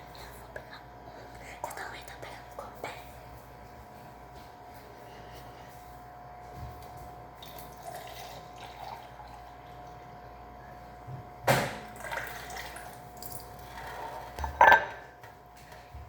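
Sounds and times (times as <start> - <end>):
faint steady hum: 0.0 - 16.0
small knocks and rustles: 6.4 - 7.2.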